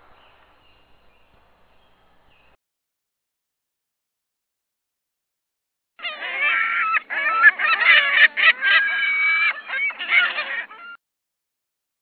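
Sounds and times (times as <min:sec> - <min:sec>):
overlapping animal calls: 0:06.0 - 0:11.0.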